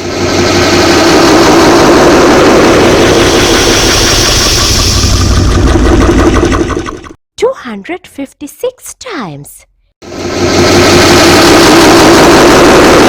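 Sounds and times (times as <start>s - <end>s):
low engine-like drone: 0.0s - 7.2s, 10.0s - 13.0s.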